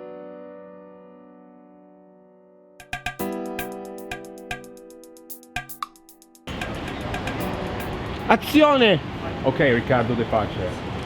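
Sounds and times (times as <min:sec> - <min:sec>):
sustained music chord: 0:02.8 - 0:08.5
beat with sharp drum hits: 0:02.8 - 0:08.7.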